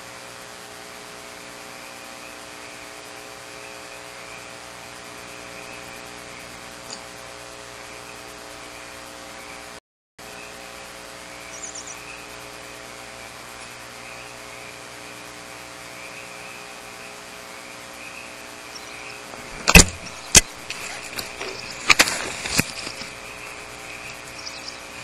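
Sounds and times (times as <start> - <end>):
microphone hiss and hum: 0.0 - 25.0
sharp knocks: 19.4 - 23.2.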